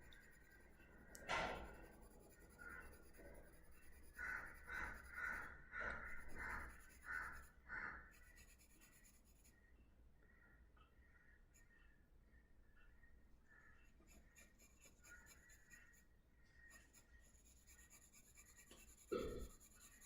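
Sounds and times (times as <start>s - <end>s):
pencil scratching on paper: 0.0s - 9.6s, 13.9s - 20.0s.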